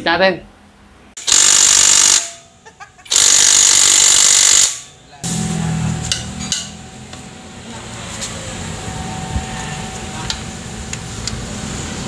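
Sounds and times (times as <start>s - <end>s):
impact wrench running: 1.2s - 2.5s, 3.1s - 7.5s
low steady hum: 4.9s - 12.0s.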